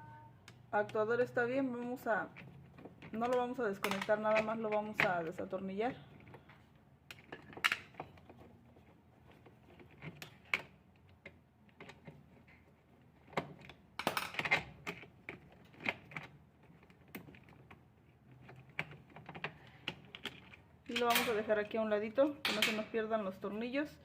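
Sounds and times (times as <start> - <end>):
metal part clattering: 20.2 - 21.5.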